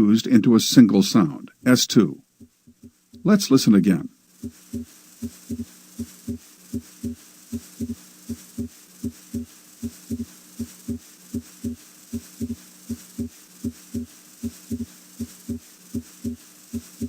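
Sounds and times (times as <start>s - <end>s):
heartbeat through a stethoscope: 4.4s - 17.0s.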